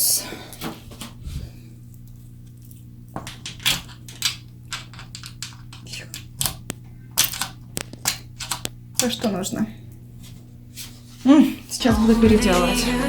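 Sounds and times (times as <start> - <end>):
metal bolts clicking and rattling: 3.3 - 6.6, 7.2 - 8.7.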